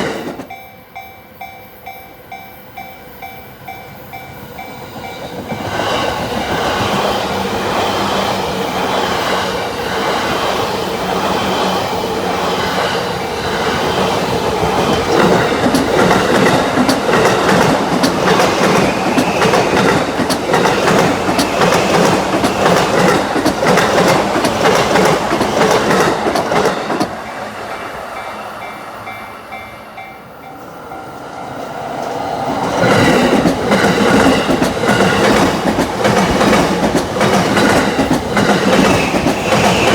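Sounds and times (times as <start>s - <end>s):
train wheels clattering over joints: 10.0s - 27.2s, 32.6s - 39.9s.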